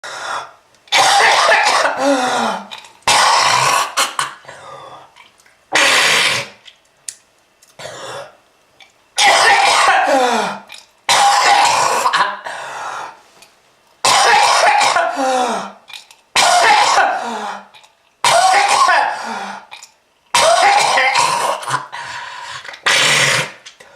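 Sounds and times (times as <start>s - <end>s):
person coughing: 0.9s - 4.6s, 9.2s - 12.6s, 14.0s - 15.8s, 16.4s - 19.4s, 20.4s - 21.9s.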